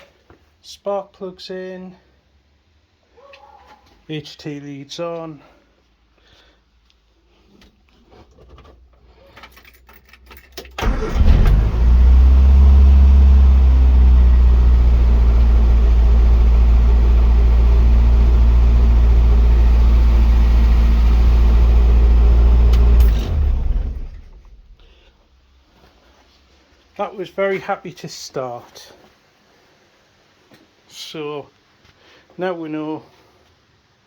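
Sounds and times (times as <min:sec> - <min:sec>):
engine cranking: 0:10.5 - 0:13.4, 0:22.4 - 0:24.9
car engine running: 0:10.8 - 0:24.9.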